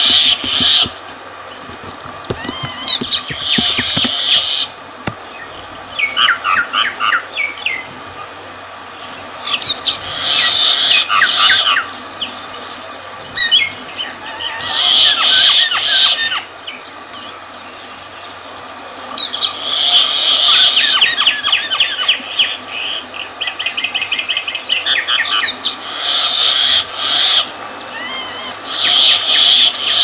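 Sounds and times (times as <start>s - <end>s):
myna squawking and whistling: 2.2s - 4.7s, 25.0s - 30.0s.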